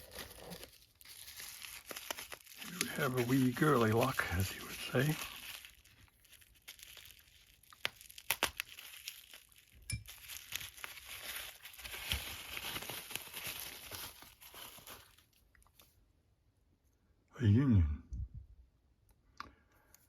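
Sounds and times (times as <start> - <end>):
wrapping crinkling and tearing: 0.0 - 16.0.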